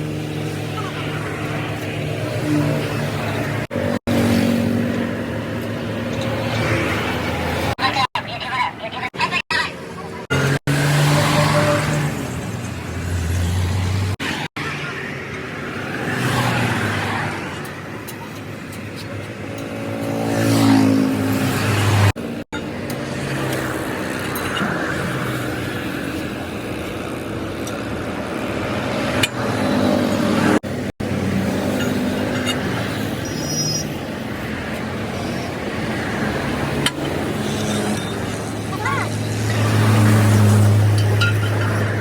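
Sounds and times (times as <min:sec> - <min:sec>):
vehicle engines running: 0:00.0 - 0:42.0
vehicle passing: 0:15.6 - 0:17.5, 0:19.8 - 0:22.2, 0:34.5 - 0:42.0.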